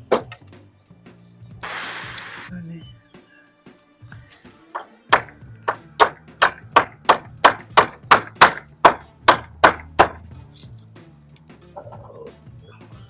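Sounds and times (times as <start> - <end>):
hammer striking wood: 4.8 - 10.2.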